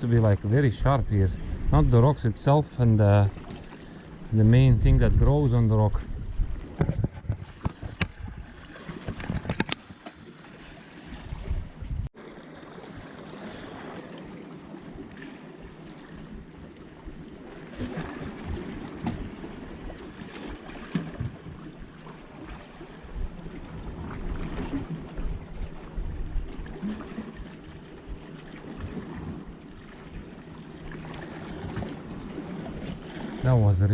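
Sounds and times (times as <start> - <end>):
wind gusting on microphone: 0.0 - 3.4, 4.2 - 9.7, 11.1 - 12.1
sea water lapping on rocks: 0.0 - 33.9.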